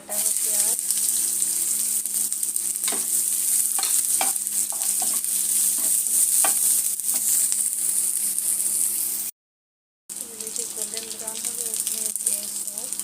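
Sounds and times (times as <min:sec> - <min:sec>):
onion sizzling in oil: 0:00.0 - 0:09.3, 0:10.1 - 0:13.0
utensil knocking and scraping pan: 0:02.8 - 0:07.4.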